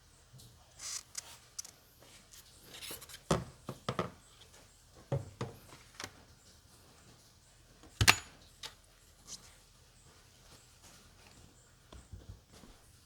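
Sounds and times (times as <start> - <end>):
clicks and knocks of tools: 8.0 - 8.8.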